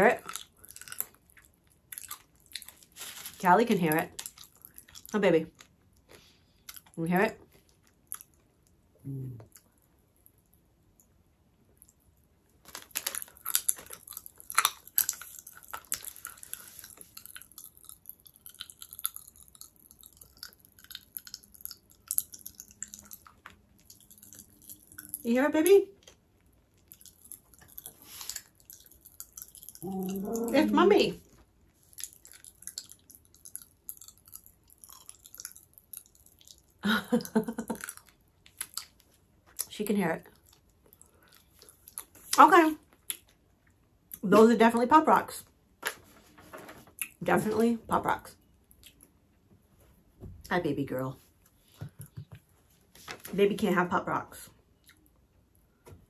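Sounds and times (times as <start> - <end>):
popping candy crackling: 12.6 - 25.3.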